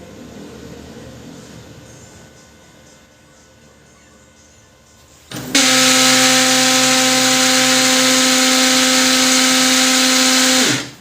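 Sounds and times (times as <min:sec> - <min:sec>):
printer motor grinding: 0:05.3 - 0:11.0.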